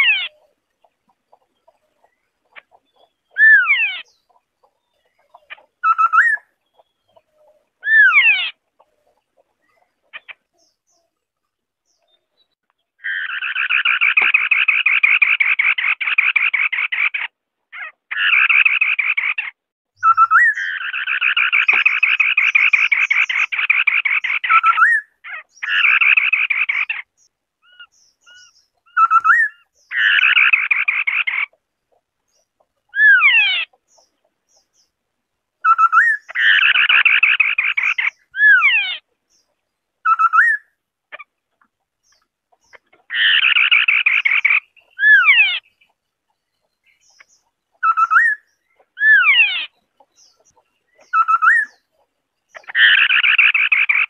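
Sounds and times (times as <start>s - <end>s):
bird whistled notes: 20.0s - 20.9s.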